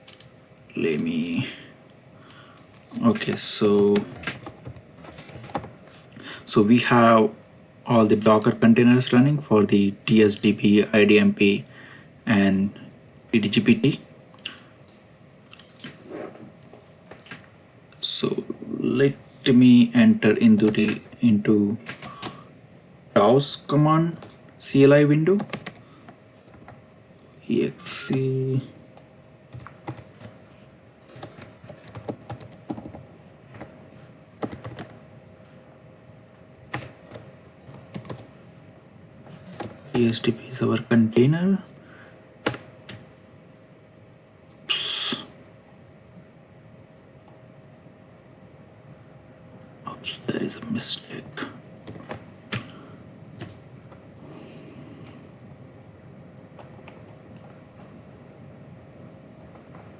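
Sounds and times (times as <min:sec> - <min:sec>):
faint steady hum: 0:00.0 - 0:59.9
keyboard typing: 0:02.8 - 0:05.7, 0:25.4 - 0:25.8, 0:29.0 - 0:30.4, 0:31.1 - 0:33.7, 0:34.4 - 0:35.0, 0:36.7 - 0:38.3, 0:39.5 - 0:40.0, 0:42.4 - 0:43.0, 0:51.8 - 0:52.7.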